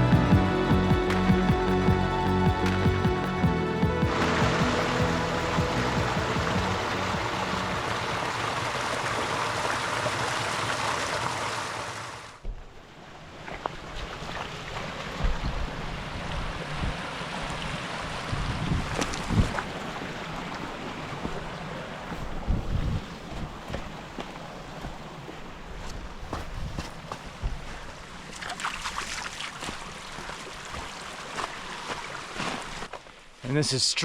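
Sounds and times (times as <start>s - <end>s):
kick drum beat: 0.0s - 7.4s
low thumps: 0.0s - 8.1s
held synth notes: 0.0s - 9.3s
rushing river water: 0.0s - 33.7s.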